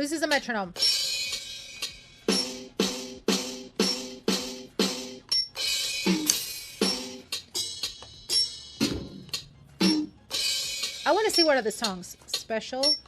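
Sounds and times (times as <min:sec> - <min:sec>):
electronic drum beat: 0:00.2 - 0:13.0.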